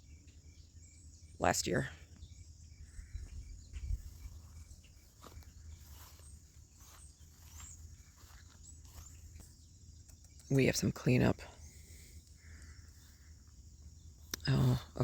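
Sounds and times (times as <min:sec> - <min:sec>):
insects chirring: 0:00.0 - 0:15.0
faint rustles and ticks: 0:02.1 - 0:10.8, 0:11.5 - 0:15.0
wind rumble on microphone: 0:02.2 - 0:06.2.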